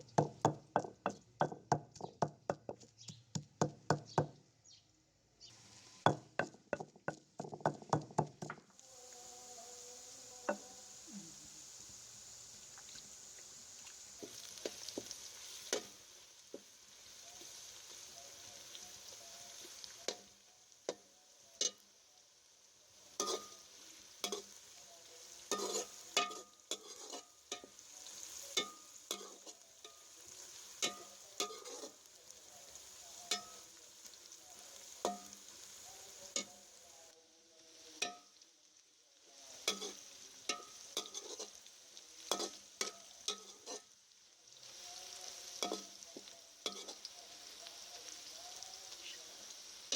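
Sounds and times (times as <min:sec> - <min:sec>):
vegetables sizzling in a pan: 0:00.0 - 0:04.4, 0:05.3 - 0:49.9
spoon scraping against pan: 0:10.4 - 0:10.7, 0:14.2 - 0:18.1, 0:19.0 - 0:21.8, 0:23.1 - 0:24.8, 0:25.4 - 0:33.8, 0:34.5 - 0:36.8, 0:39.5 - 0:44.0, 0:44.6 - 0:47.9.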